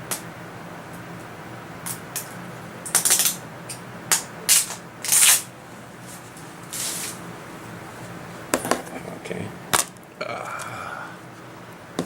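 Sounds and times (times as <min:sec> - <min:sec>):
packaging rustling and scraping: 0:05.1 - 0:07.2.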